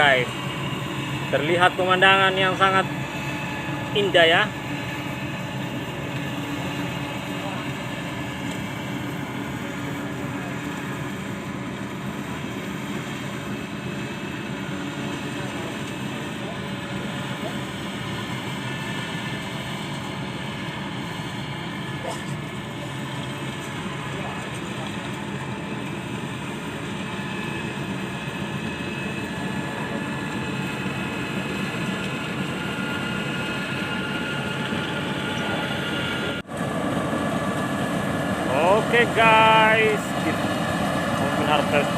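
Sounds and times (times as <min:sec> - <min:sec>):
combine harvester engine running: 0:00.0 - 0:41.9.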